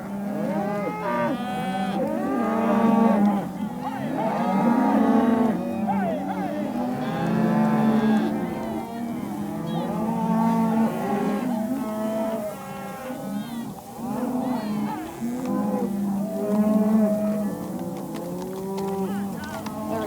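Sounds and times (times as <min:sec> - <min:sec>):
cattle mooing and bawling: 0:00.0 - 0:20.0.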